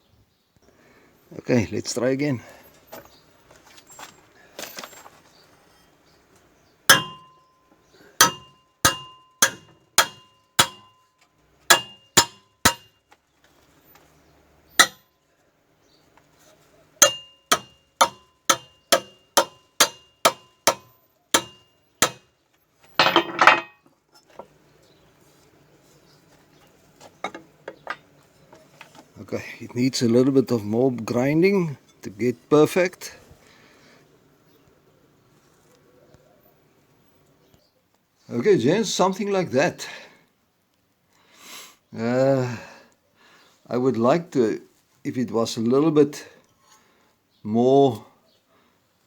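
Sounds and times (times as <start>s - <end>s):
hammer clanging on steel pipe: 6.9s - 7.4s, 8.2s - 11.0s, 11.7s - 13.0s, 14.8s - 15.0s, 17.0s - 22.2s, 23.0s - 23.8s.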